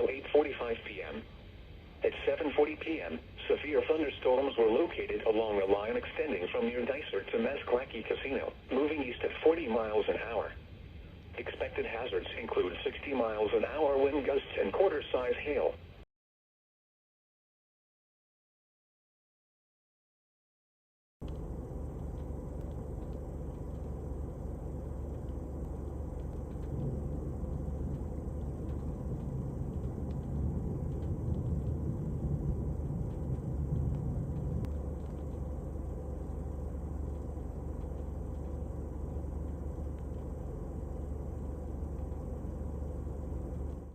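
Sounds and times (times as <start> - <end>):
gusty wind buffeting microphone: 26.4 - 35.2.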